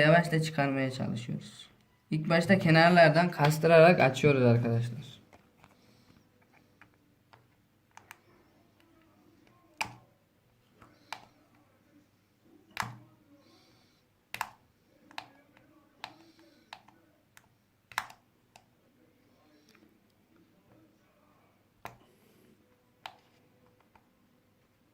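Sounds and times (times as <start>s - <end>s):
plastic card clicks and taps: 12.8s - 13.0s.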